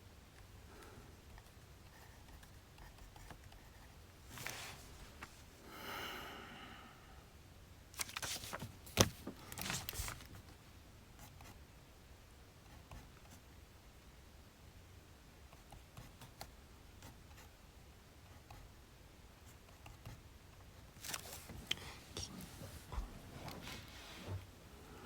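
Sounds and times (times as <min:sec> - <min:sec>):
soft rustle: 0:04.2 - 0:05.6, 0:08.0 - 0:10.6, 0:20.9 - 0:25.0.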